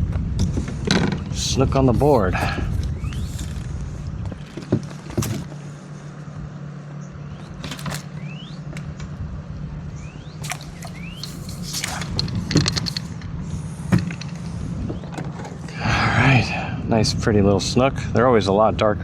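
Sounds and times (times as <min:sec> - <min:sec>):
steady low hum: 0:00.0 - 0:19.0
knocks and rattles on kayak: 0:00.1 - 0:01.4, 0:02.3 - 0:05.6
short rising squeaks: 0:02.1 - 0:05.5, 0:10.0 - 0:13.2.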